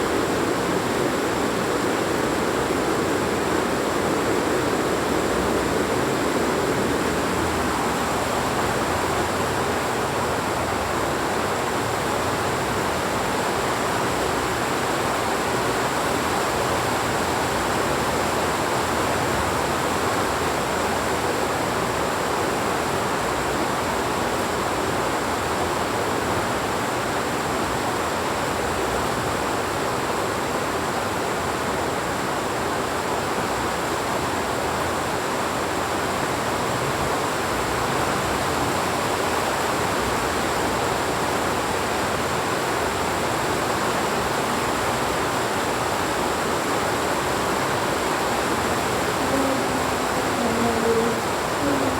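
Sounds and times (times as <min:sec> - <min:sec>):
heavy rain falling: 0:46.4 - 0:51.9.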